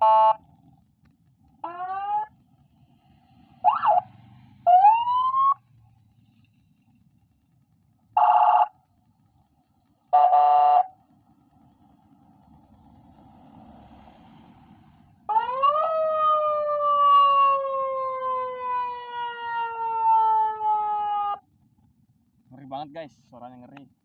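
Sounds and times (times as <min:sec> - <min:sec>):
siren sweeping up and down: 0:01.6 - 0:02.4, 0:03.6 - 0:05.6, 0:15.3 - 0:21.4.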